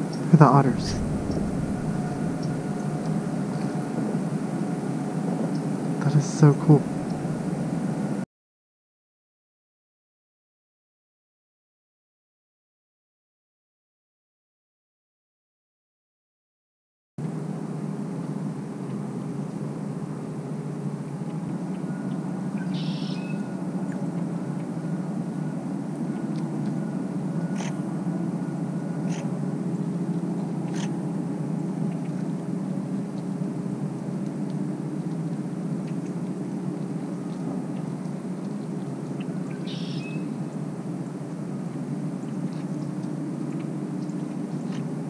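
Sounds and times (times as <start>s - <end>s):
low mechanical hum: 0.0s - 8.2s, 17.2s - 45.0s
short high-pitched calls: 39.7s - 40.2s.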